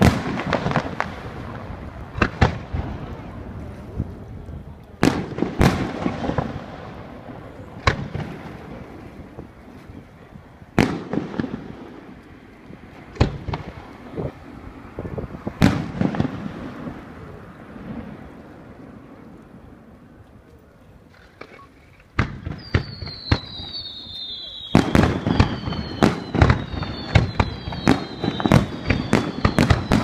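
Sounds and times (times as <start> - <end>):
rumbling echo and crackling: 0.0 - 21.1
small firework pops: 2.1 - 3.3, 7.8 - 8.7, 10.8 - 14.0, 20.2 - 30.0.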